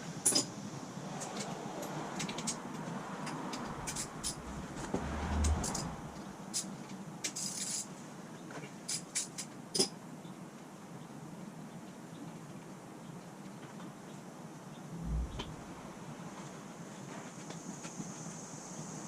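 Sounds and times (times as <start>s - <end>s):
brief low rumble: 3.6s - 6.5s, 14.9s - 16.6s.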